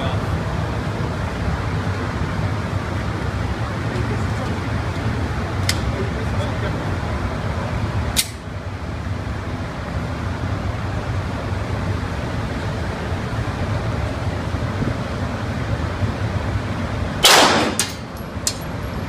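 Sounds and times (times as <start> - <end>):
steady low rumble: 0.0 - 19.0
gunshot: 17.2 - 18.0.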